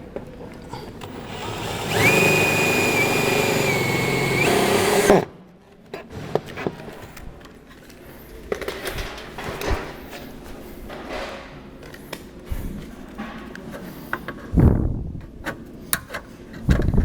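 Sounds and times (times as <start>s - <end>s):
electric power tool whining: 1.0s - 5.3s.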